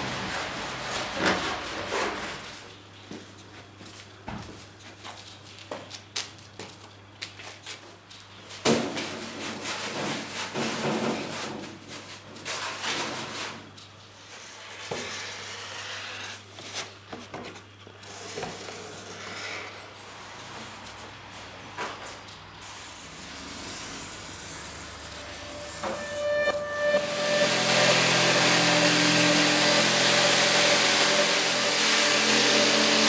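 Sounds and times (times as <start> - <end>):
rubbing and scraping on metal: 22.7 - 33.0.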